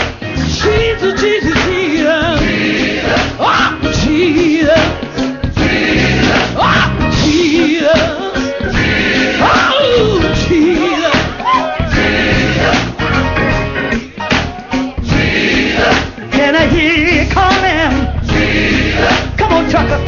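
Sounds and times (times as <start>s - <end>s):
band playing: 0.0s - 20.0s
lead singer vocals: 0.4s - 12.6s, 16.1s - 18.4s
choir singing: 0.6s - 20.0s.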